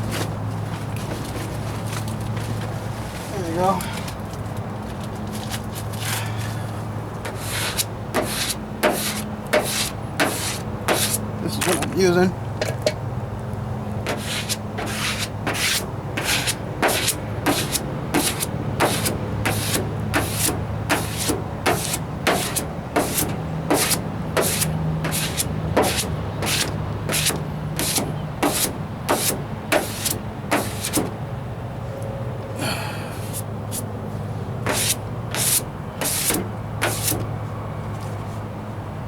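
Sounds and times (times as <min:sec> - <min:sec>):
sandpaper rubbing on metal: 0:07.2 - 0:11.8, 0:14.1 - 0:31.2, 0:33.2 - 0:33.9, 0:34.6 - 0:37.3.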